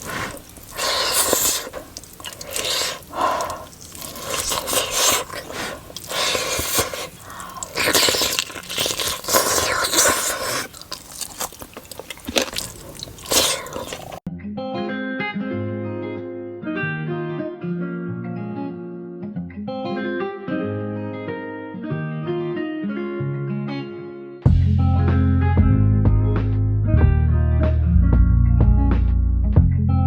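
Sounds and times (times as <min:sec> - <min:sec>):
wet mouth clicks: 0:00.0 - 0:14.2
person chewing and crunching food: 0:00.0 - 0:14.3.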